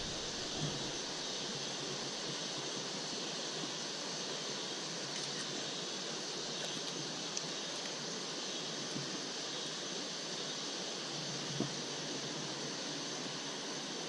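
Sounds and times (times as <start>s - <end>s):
river water rushing: 0.0s - 1.8s.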